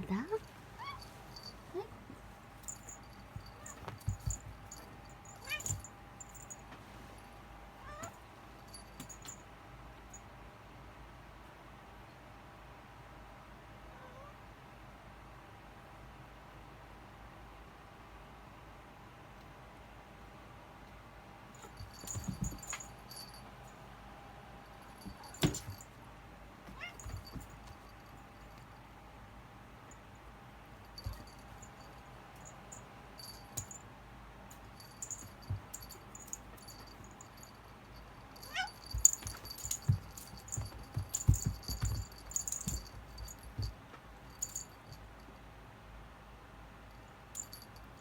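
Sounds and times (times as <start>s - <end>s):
faint light tinkling: 0.0s - 9.5s, 21.6s - 23.8s, 24.6s - 26.0s, 26.7s - 28.8s, 30.8s - 33.9s, 34.5s - 45.4s, 46.9s - 48.0s
cat toy rattling and jingling: 2.6s - 6.6s, 21.6s - 23.4s, 34.8s - 43.7s
dull thumps on floor: 3.4s - 4.8s, 21.8s - 22.9s, 38.7s - 43.8s.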